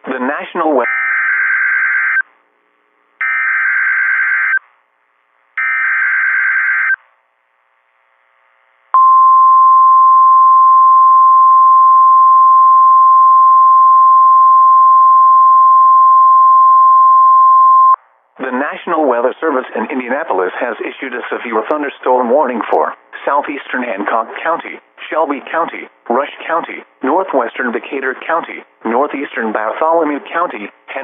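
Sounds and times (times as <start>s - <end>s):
steady warning alarm tone: 3.2s - 4.6s.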